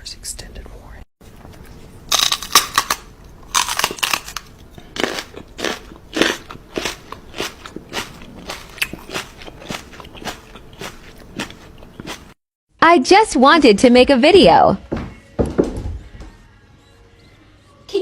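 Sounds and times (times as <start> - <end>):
crisp crunching: 2.1 - 12.2.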